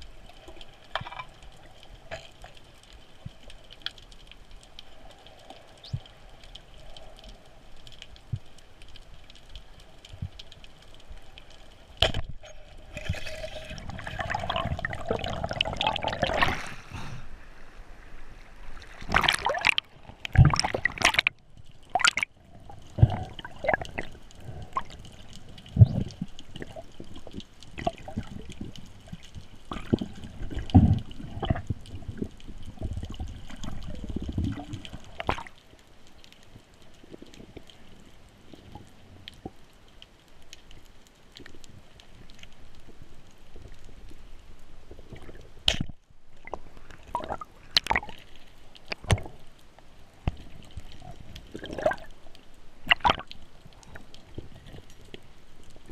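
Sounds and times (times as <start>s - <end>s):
water gurgling and sloshing: 0.0s - 55.9s
rushing water: 8.0s - 35.6s, 44.9s - 55.9s.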